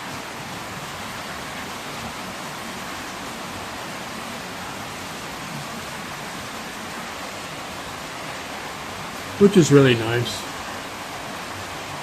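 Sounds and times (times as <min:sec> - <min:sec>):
pouring rain: 0:00.0 - 0:12.0.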